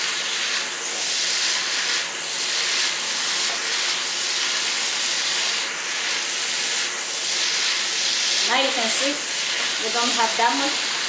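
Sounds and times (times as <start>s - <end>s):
vegetables sizzling in a wok: 0.0s - 11.0s.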